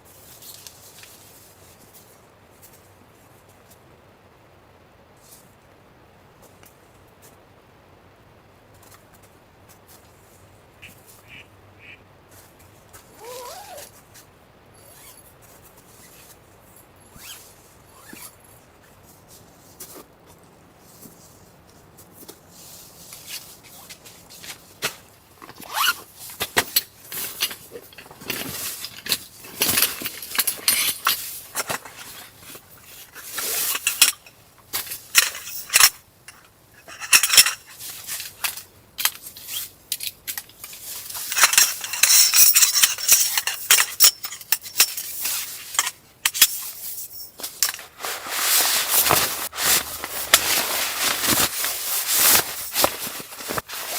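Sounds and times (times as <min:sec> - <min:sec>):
hard objects scraping and clinking: 0:26.6 - 0:39.2, 0:40.7 - 0:53.9.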